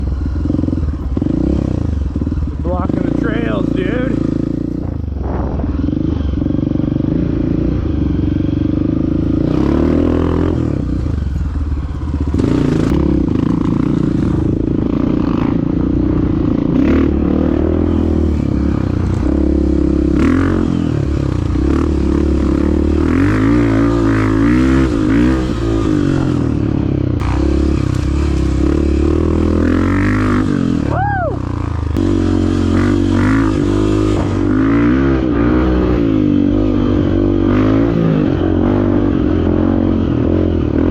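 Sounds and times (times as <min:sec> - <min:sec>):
dirt bike engine revving: 0:00.0 - 0:40.9.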